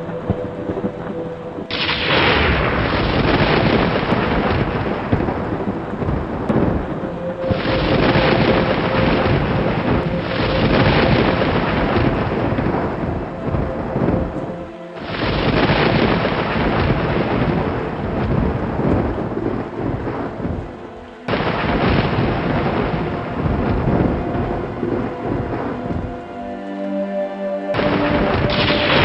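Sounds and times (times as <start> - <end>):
thunder rumbling: 0.0 - 26.4, 27.7 - 29.0
rain: 0.0 - 29.0.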